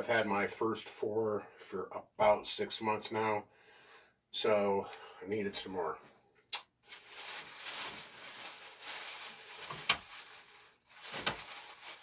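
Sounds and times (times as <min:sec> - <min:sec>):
packaging rustling: 0:06.8 - 0:12.0.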